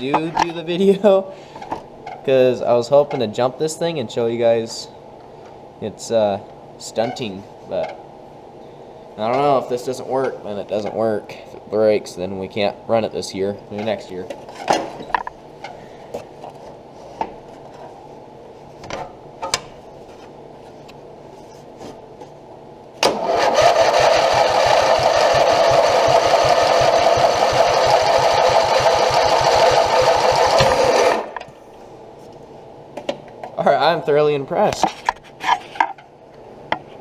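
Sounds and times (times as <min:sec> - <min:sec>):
electric starter cranking engine: 0:23.0 - 0:31.4.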